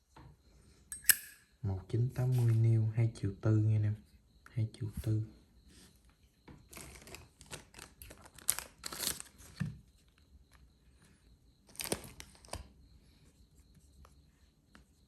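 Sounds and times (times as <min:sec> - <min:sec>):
lighter clicks: 0:00.9 - 0:01.4.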